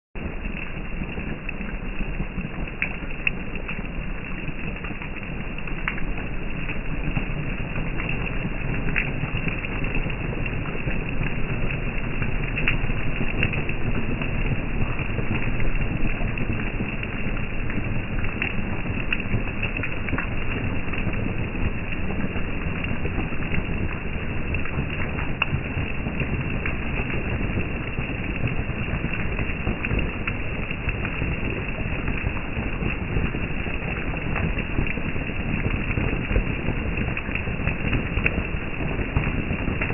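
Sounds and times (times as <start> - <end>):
rain hissing: 0.2 - 39.9
raindrop ticks: 0.2 - 39.9.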